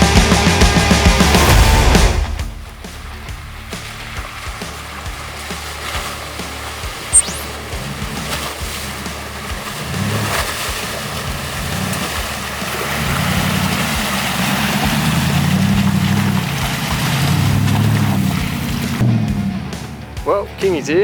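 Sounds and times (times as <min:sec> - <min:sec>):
vehicle engine approaching: 0:00.3 - 0:21.0
river water rushing: 0:02.5 - 0:19.0.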